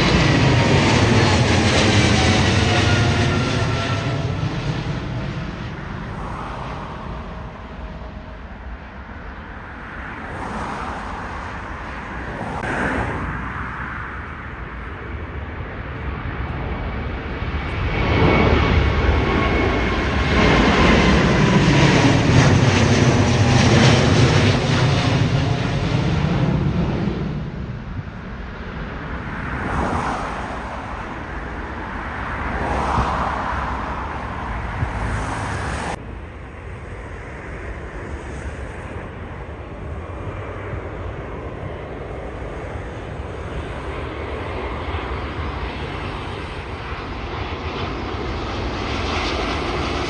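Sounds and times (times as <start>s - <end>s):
jet airliner passing overhead: 0.0s - 50.0s.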